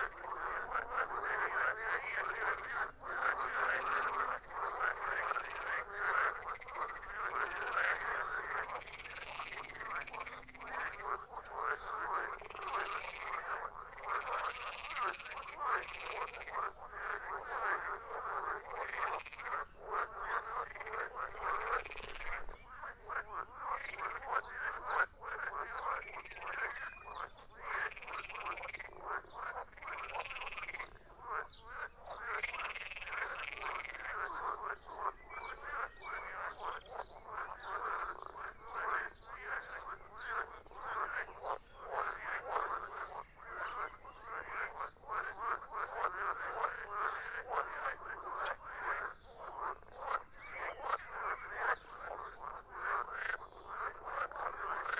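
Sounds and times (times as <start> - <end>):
frogs croaking: 0.0 - 54.9.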